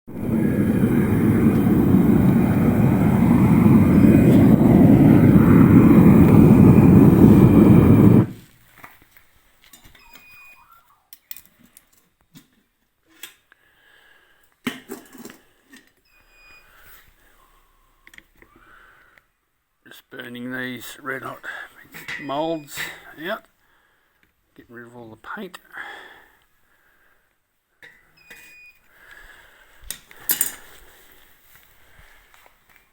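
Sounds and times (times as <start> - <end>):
furnace burner rushing: 0.1 - 8.4.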